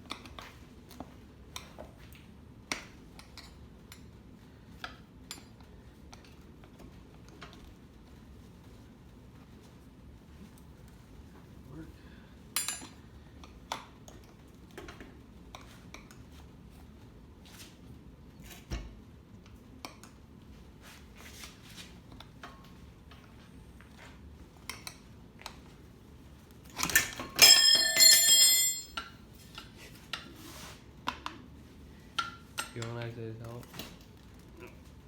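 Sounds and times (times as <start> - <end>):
loud metallic clatter with ringing: 27.0 - 29.0.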